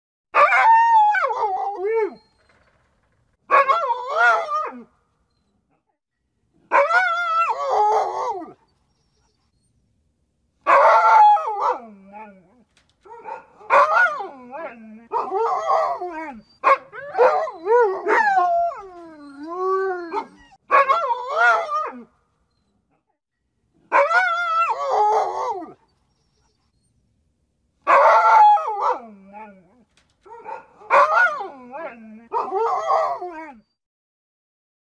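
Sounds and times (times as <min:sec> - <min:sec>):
dog whining howls: 0:00.4 - 0:02.7, 0:10.7 - 0:22.0, 0:23.9 - 0:26.6, 0:27.9 - 0:33.8.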